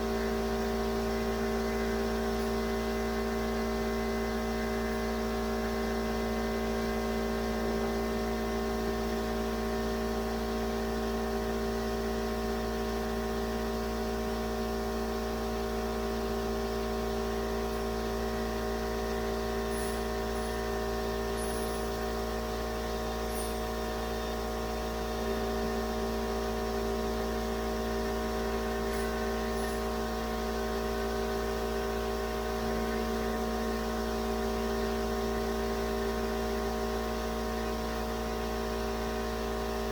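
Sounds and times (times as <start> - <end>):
electric machine hum: 0.0 - 9.6, 13.0 - 35.0.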